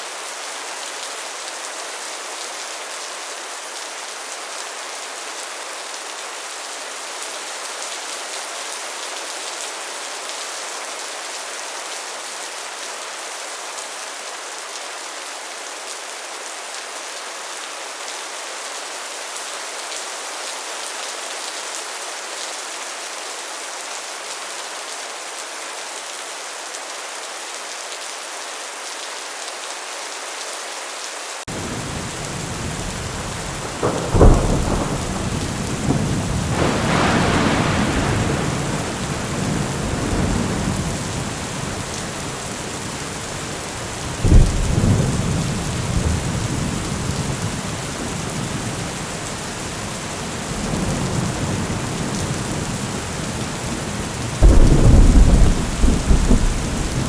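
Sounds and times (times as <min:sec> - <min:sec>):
heavy rain on a metal roof: 0:00.0 - 0:57.0
sharp thunderclaps: 0:31.5 - 0:43.0, 0:44.2 - 0:46.3, 0:54.4 - 0:57.0
deep thunder rumble: 0:31.5 - 0:43.5, 0:44.1 - 0:48.8, 0:54.4 - 0:57.0.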